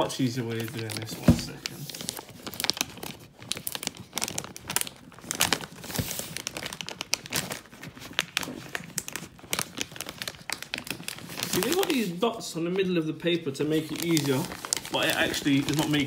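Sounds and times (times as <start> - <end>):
paper crumpling and rustling: 0.0 - 16.0
paper tearing: 11.2 - 12.2.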